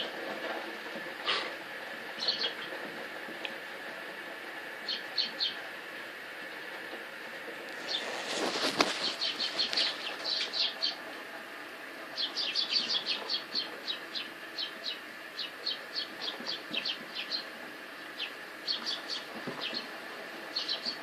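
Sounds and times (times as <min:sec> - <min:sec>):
steady background hum: 0:00.0 - 0:21.0
small birds chirping: 0:02.1 - 0:02.9, 0:04.8 - 0:05.7, 0:07.7 - 0:11.1, 0:12.1 - 0:21.0
brief rustle: 0:07.7 - 0:10.6.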